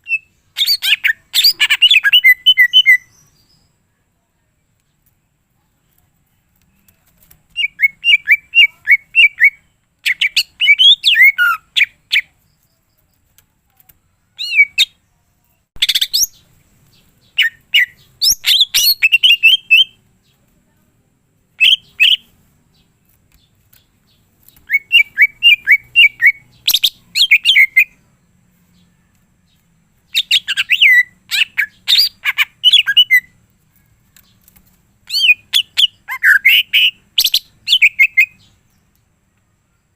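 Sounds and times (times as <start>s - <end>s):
bird chirping and warbling: 0.0s - 3.7s, 7.5s - 12.7s, 14.0s - 15.0s, 15.8s - 20.4s, 21.6s - 38.6s.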